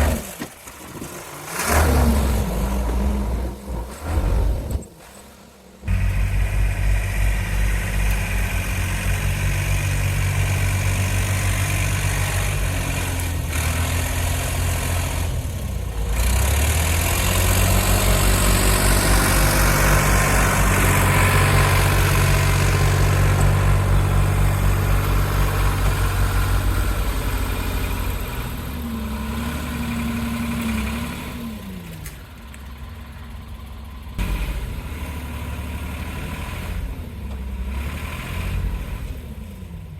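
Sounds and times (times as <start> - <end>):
excavator diesel engine running: 5.7 - 37.4.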